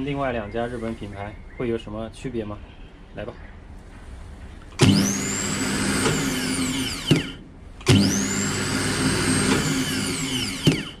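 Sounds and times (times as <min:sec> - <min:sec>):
starter motor clunk: 0:04.8 - 0:11.0
starter motor whine: 0:04.8 - 0:11.0.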